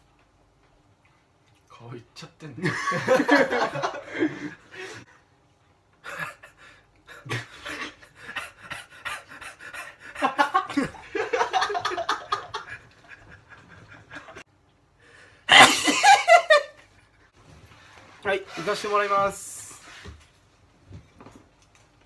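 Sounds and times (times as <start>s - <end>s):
person laughing: 6.0s - 14.4s, 15.5s - 16.8s
person panting and gasping: 6.1s - 11.0s.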